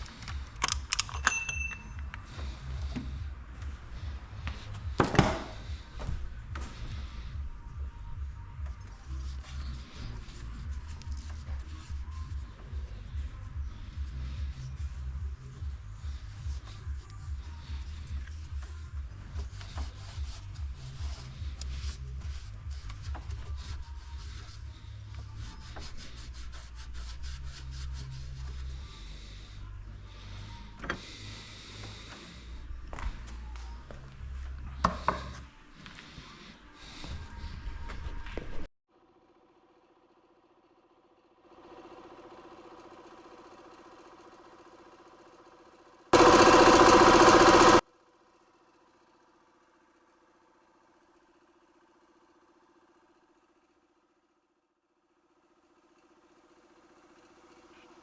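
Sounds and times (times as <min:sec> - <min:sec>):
rubbing and scraping: 0:08.8 - 0:29.1
diesel engine idling: 0:46.2 - 0:47.8.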